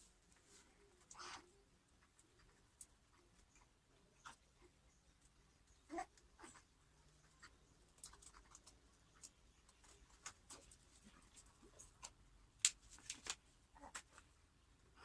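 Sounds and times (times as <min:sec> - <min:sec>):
faint small clicks and scratches: 0:00.0 - 0:14.4.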